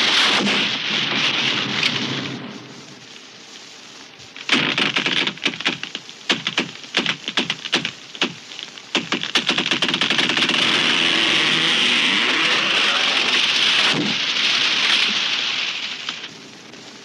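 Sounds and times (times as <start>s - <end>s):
noisy rush: 0.0s - 17.0s
wood cracking and splintering: 4.4s - 16.3s.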